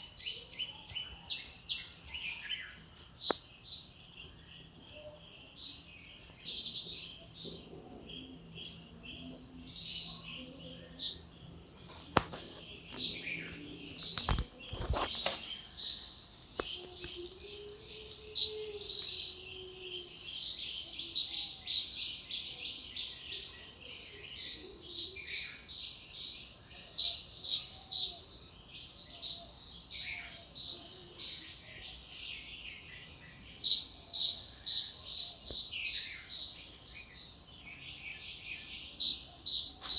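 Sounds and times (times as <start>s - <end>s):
insects trilling: 0.0s - 39.9s
sharp clicks: 14.0s - 15.5s.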